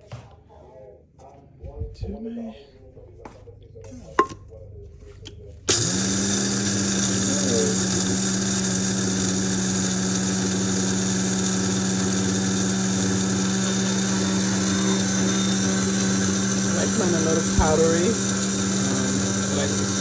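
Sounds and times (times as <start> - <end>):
electric coffee grinder grinding: 5.7 - 20.0.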